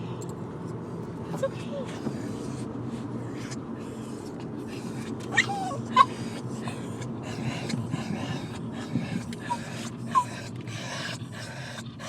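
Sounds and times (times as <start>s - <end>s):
car road noise hum: 0.0s - 12.0s
dog panting rapidly: 1.8s - 12.0s
dog whining: 4.7s - 12.0s
dog yipping: 5.3s - 6.4s, 9.4s - 11.8s.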